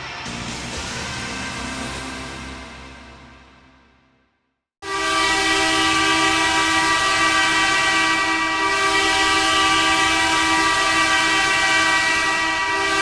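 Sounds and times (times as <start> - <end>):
goal horn blasting: 4.8 - 13.0.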